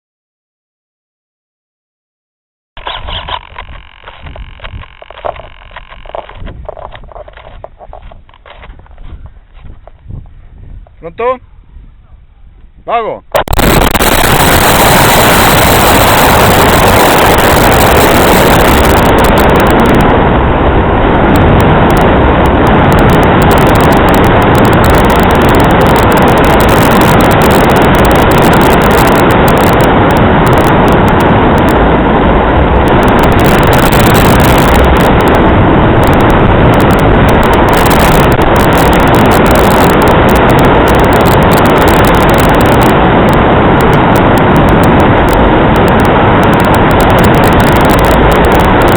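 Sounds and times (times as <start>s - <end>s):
wind blowing over microphone: 2.8s - 48.9s.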